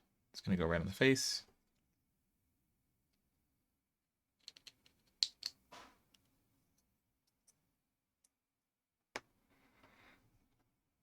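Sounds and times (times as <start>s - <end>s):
plastic blocks clicking: 4.4s - 5.6s.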